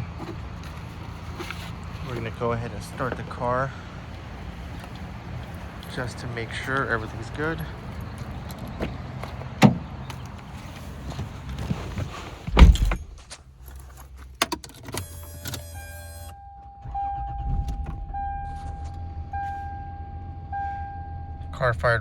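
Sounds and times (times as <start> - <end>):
car engine starting and idling: 0.0 - 22.0
heavy thump: 17.4 - 19.0
warning chime: 18.1 - 21.5.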